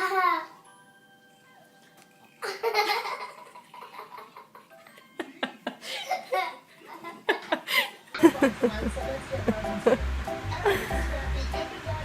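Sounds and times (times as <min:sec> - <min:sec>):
person laughing: 0:02.4 - 0:11.3.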